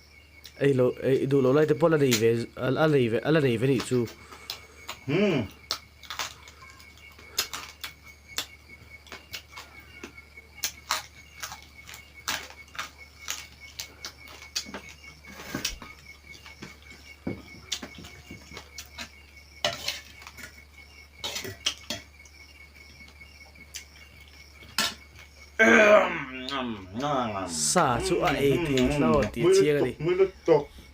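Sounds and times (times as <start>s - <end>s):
cutlery and dishes clinking: 17.7s - 20.5s, 21.2s - 22.1s.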